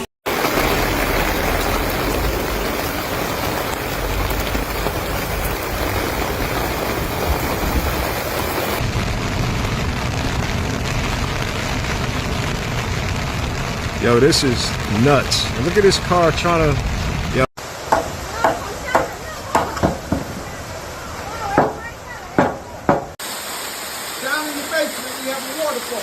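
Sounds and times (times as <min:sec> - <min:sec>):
heavy rain pouring: 0:00.0 - 0:26.0.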